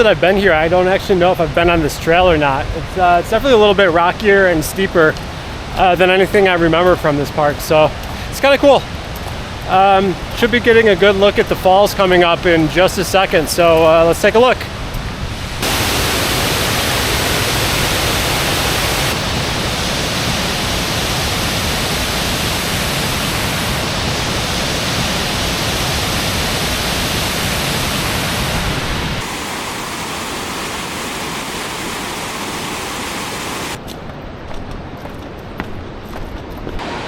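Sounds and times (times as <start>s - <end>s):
waterfall rushing: 15.2s - 33.8s, 36.8s - 37.0s.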